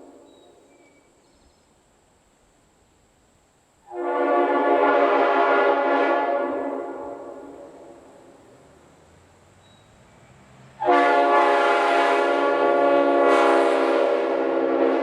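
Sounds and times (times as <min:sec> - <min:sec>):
locomotive air horn blast: 0:03.9 - 0:08.3, 0:10.8 - 0:15.0.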